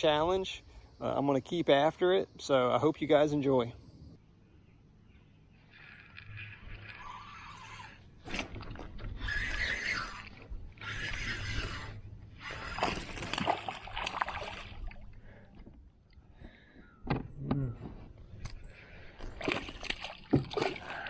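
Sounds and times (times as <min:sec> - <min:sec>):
water sloshing and splashing: 0:05.8 - 0:15.8, 0:19.0 - 0:21.0.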